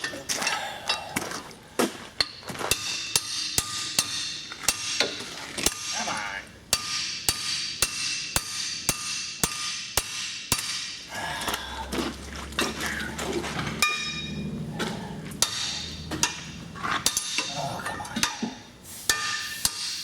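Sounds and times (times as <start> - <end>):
ringing metal clang: 2.2 - 6.1, 6.7 - 11.0, 13.7 - 20.0
hammer striking metal: 2.2 - 11.1, 13.7 - 17.5, 18.2 - 20.0.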